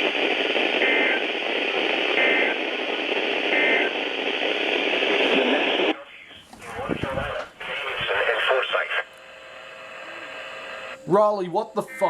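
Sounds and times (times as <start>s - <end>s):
radio static hiss: 0.0s - 12.0s
digital data tone bursts: 10.9s - 12.0s.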